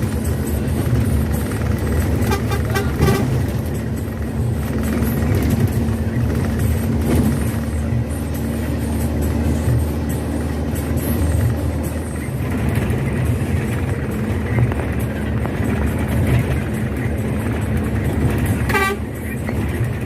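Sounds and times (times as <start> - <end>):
bus engine hum: 0.0 - 20.0
road noise: 0.0 - 20.0
bus horn tooting: 0.8 - 4.3, 17.2 - 19.7.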